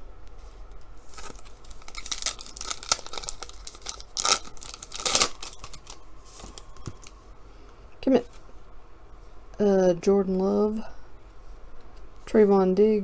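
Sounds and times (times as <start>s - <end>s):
cards swishing and crinkling: 1.0s - 7.2s.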